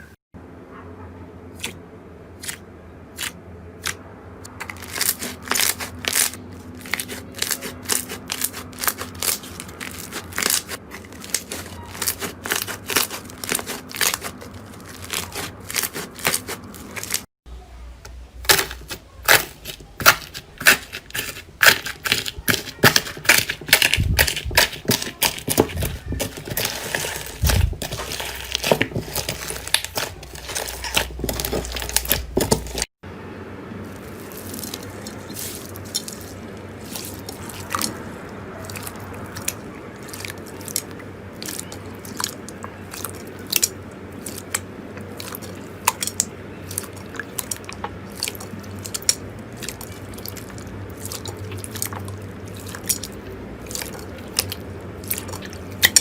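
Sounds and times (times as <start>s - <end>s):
slime popping and crackling: 4.6s - 17.2s, 18.5s - 32.9s.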